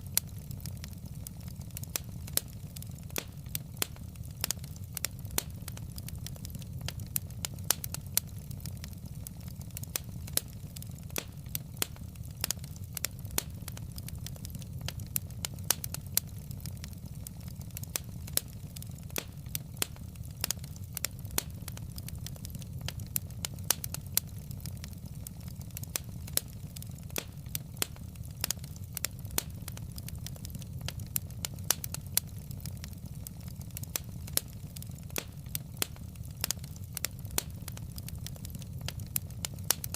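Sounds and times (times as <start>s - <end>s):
fire rumbling: 0.0s - 39.9s
logs crackling and popping: 0.0s - 39.9s.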